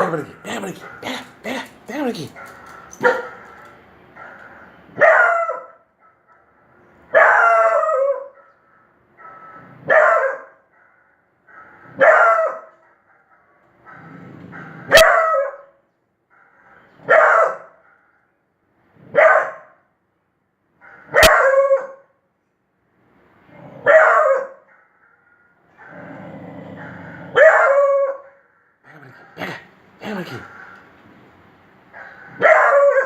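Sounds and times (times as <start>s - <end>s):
dog barking: 0.5s - 3.6s, 4.2s - 6.4s, 7.1s - 8.6s, 9.2s - 15.8s, 17.0s - 18.1s, 19.1s - 19.8s, 20.8s - 22.1s, 23.8s - 26.0s, 26.8s - 28.4s, 32.0s - 33.0s.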